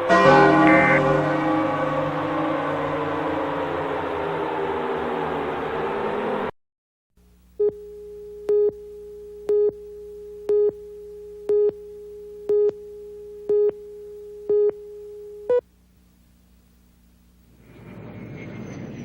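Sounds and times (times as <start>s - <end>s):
buzzy electronic beeps: 0.0s - 5.7s
steady electronic tone: 0.0s - 6.5s.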